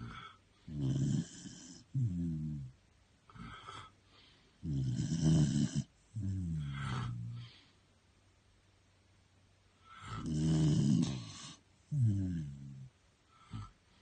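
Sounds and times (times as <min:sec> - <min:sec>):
dog snoring: 0:00.0 - 0:02.7, 0:03.3 - 0:03.9, 0:04.6 - 0:07.6, 0:09.8 - 0:13.8.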